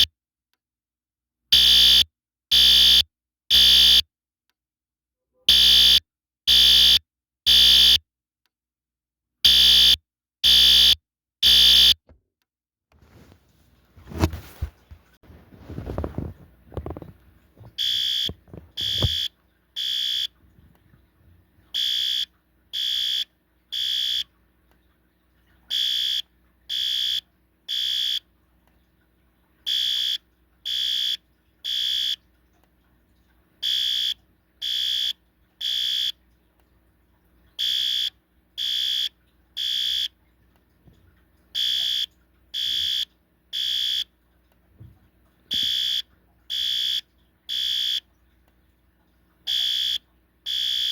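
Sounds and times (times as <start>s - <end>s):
high-pitched alarm beeps: 17.8s - 20.3s, 21.8s - 24.2s, 25.7s - 28.2s, 29.7s - 32.2s, 33.6s - 36.1s, 37.6s - 40.1s, 41.6s - 44.1s, 45.5s - 48.0s, 49.5s - 50.9s.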